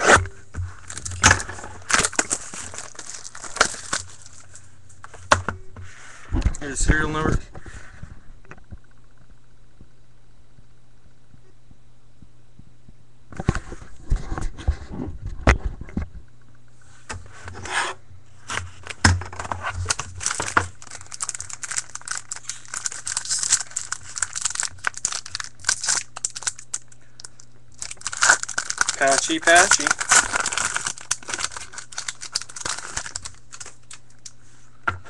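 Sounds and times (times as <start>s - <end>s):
cards rustling and clicking: 0.7s - 5.3s, 18.5s - 34.4s
packaging being torn open: 0.8s - 4.6s, 19.6s - 34.4s.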